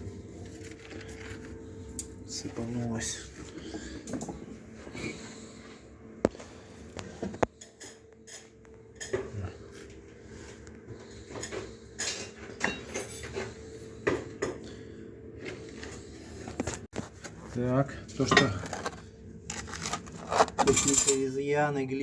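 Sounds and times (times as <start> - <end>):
hand tools clinking and scraping: 18.2 - 21.3.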